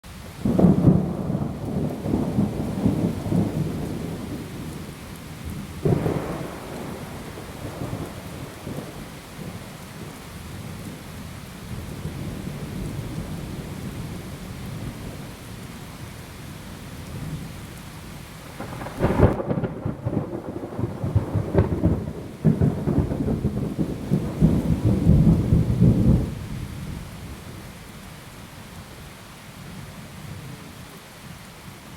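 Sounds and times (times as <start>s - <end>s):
rain hissing: 0.1s - 31.9s
loud thunderclap: 0.4s - 4.4s, 5.8s - 9.5s, 18.6s - 26.4s
thunder rumbling: 0.4s - 11.0s, 18.4s - 27.1s
thunder crack: 18.6s - 26.3s.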